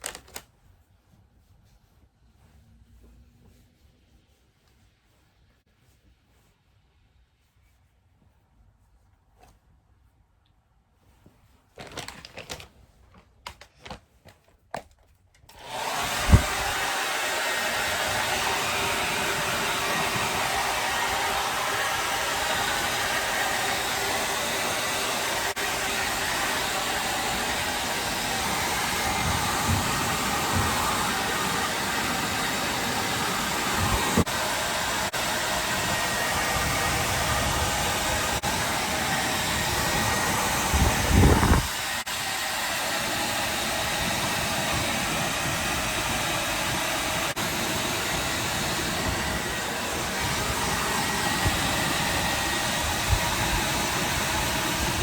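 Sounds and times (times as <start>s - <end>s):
hair dryer blowing: 15.5s - 55.0s.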